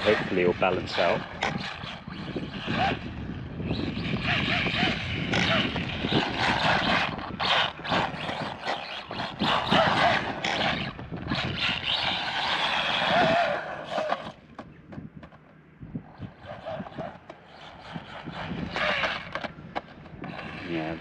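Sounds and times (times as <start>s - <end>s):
electric motor whining: 0.0s - 14.7s, 16.0s - 21.0s
toy truck drivetrain and tyres rattling: 4.6s - 15.4s, 16.4s - 20.9s.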